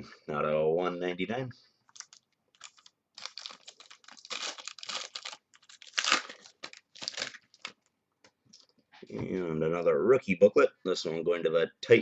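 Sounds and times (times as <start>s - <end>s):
loud wrapper rips: 1.9s - 7.8s
wrappers crinkling and tearing: 1.9s - 7.9s.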